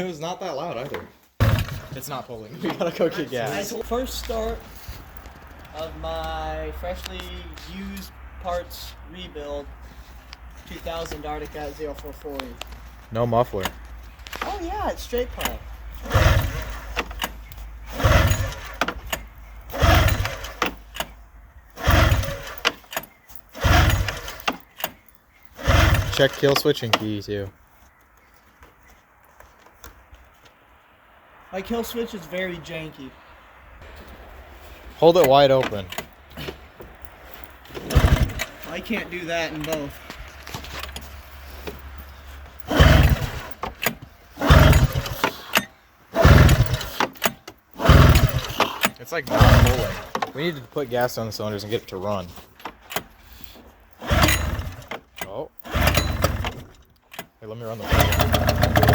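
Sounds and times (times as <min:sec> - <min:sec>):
engine turning over: 0:01.4 - 0:02.1, 0:14.3 - 0:26.7, 0:35.2 - 0:50.5, 0:52.9 - 0:56.8, 0:57.7 - 0:58.9
recoil starter pulls: 0:01.4 - 0:27.4, 0:34.9 - 0:58.9
rattling clicks: 0:03.6 - 0:08.2, 0:10.3 - 0:27.2, 0:35.2 - 0:51.2, 0:52.2 - 0:58.9
snowmobile engine bursts of firing: 0:16.0 - 0:16.9, 0:17.9 - 0:18.8, 0:19.7 - 0:20.7, 0:21.7 - 0:22.7, 0:23.6 - 0:24.4, 0:25.6 - 0:26.4, 0:37.8 - 0:39.3, 0:42.7 - 0:43.6, 0:44.4 - 0:45.5, 0:46.2 - 0:47.0, 0:47.8 - 0:50.2, 0:54.0 - 0:54.9.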